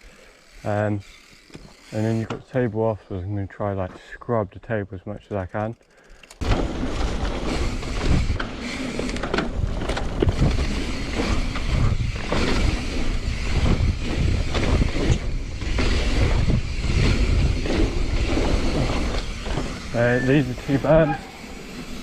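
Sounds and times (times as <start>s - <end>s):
bike tyres rumbling: 0.0s - 2.7s, 5.4s - 22.0s
bike knocking over rough ground: 6.4s - 20.2s
wind buffeting microphone: 9.5s - 20.0s.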